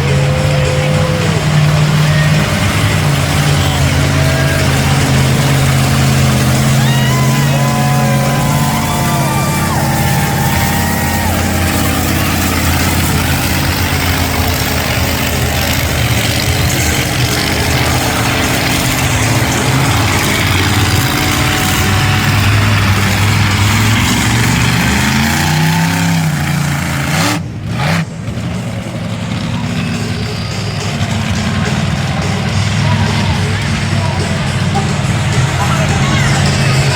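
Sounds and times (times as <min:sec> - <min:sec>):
loud truck engine revving: 0:00.0 - 0:36.9.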